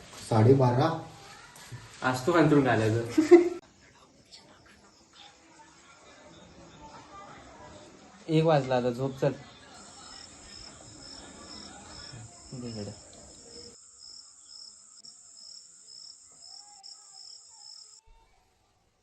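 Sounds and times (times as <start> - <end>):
murmur of voice: 3.8 - 13.8
cricket chirping: 9.8 - 18.0.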